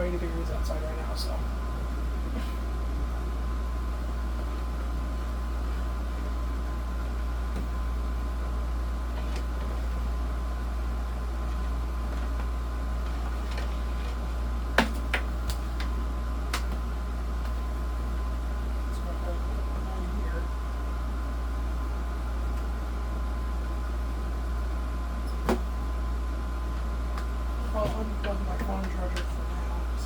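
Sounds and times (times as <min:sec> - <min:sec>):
air conditioner humming: 0:00.0 - 0:30.0.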